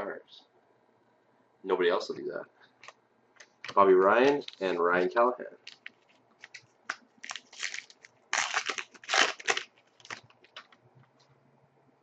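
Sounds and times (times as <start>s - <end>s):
wrapper crinkling: 3.4s - 5.0s, 5.6s - 10.8s.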